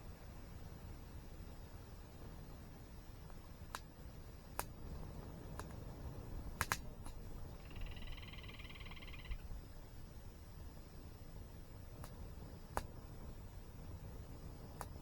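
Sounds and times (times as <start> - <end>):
campfire wood crackling and popping: 0.5 - 8.1, 9.4 - 15.0
small animal pulsed trill: 7.4 - 10.0.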